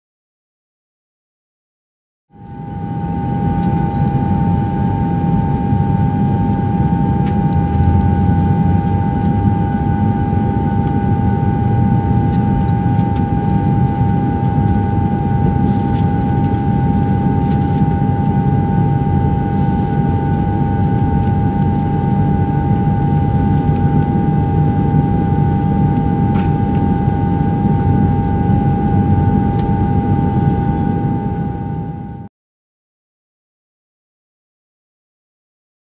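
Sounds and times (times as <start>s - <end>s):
airplane cabin rumble: 2.4s - 32.3s
high-pitched hum: 2.4s - 32.3s.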